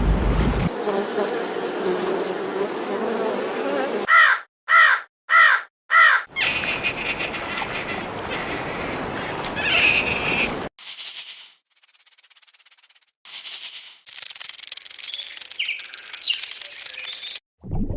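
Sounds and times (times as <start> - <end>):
crow cawing: 4.1 - 6.4
dry buzzing rattle: 10.8 - 17.4.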